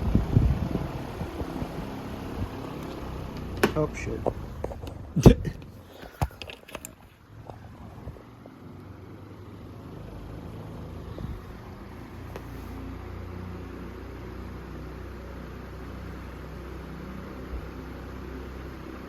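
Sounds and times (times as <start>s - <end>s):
table fan running: 0.0s - 19.0s
sharp knocks: 3.5s - 3.9s.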